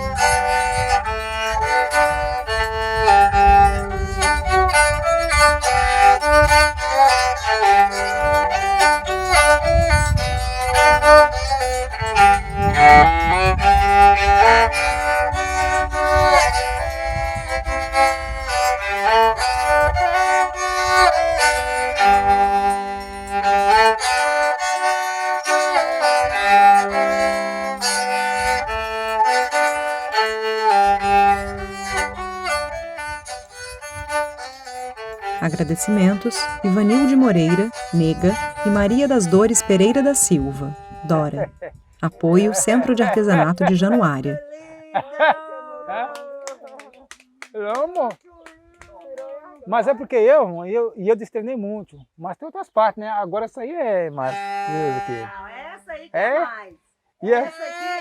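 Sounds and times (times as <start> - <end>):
bowed fiddle folk melody: 0.0 - 41.5, 54.3 - 55.3, 57.5 - 58.0.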